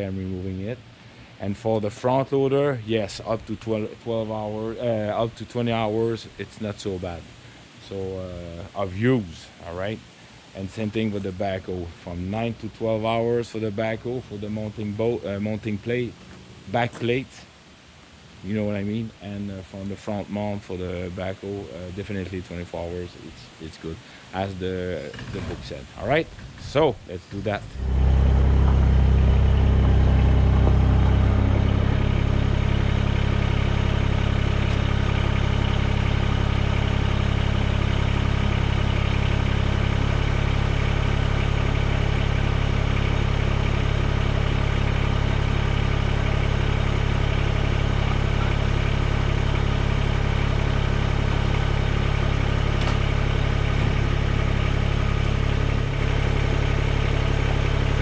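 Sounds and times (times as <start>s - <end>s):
tractor diesel engine idling: 25.1s - 58.0s.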